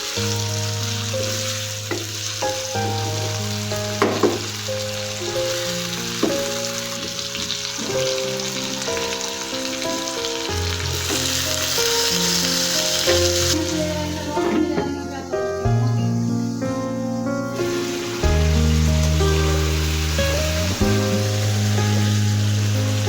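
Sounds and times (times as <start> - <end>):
background music of held notes: 0.0 - 23.0
food sizzling in hot oil: 0.0 - 23.0
stirring knocks in pan: 4.0 - 4.6.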